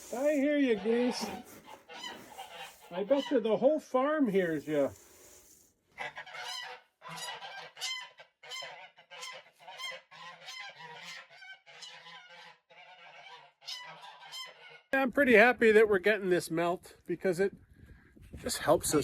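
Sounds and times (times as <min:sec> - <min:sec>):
geese honking: 0:00.0 - 0:03.8, 0:06.0 - 0:15.0.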